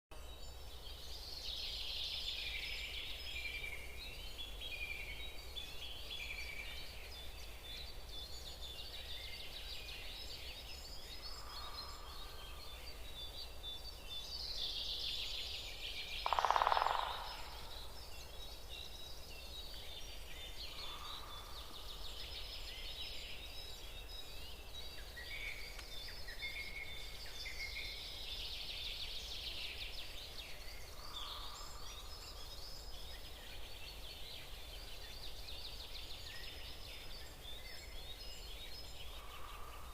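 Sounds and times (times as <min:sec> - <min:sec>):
small birds chirping and trilling: 0:00.1 - 0:39.9
loud deep bird call: 0:16.2 - 0:17.5
lower bird call: 0:16.2 - 0:17.7.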